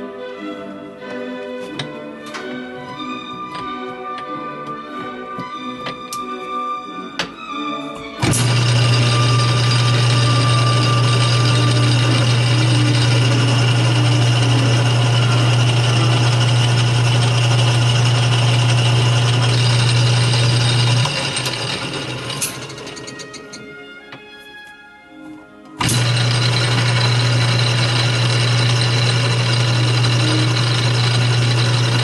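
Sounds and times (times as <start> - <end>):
mechanical hash: 8.2 - 23.6, 25.8 - 32.0
lathe motor hum: 8.2 - 23.7, 25.8 - 32.0.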